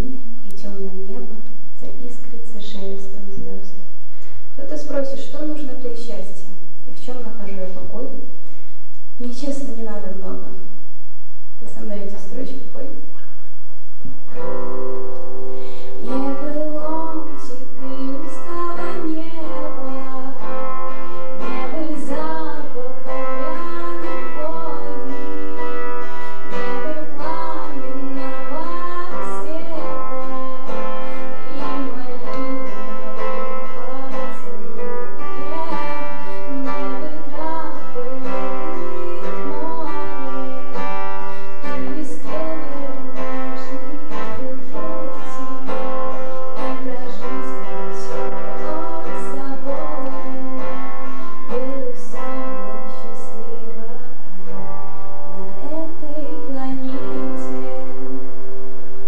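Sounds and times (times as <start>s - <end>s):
plucked string music: 14.2s - 59.0s.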